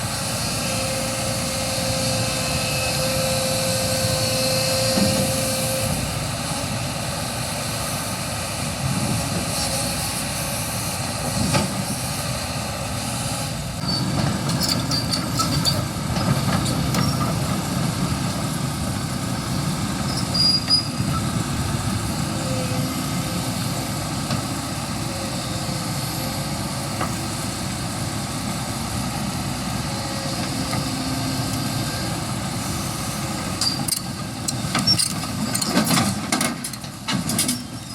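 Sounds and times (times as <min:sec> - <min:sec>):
excavator diesel engine running: 0:00.0 - 0:37.9
high squeaks of steel parts: 0:13.8 - 0:15.8, 0:20.1 - 0:21.3, 0:33.6 - 0:34.1, 0:37.4 - 0:37.9.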